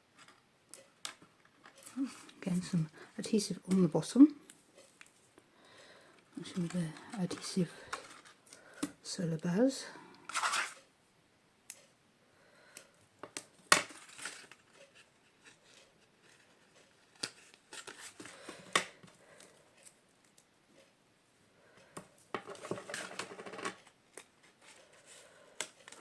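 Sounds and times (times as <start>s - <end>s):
paper rustling: 6.4s - 8.4s, 10.3s - 10.8s.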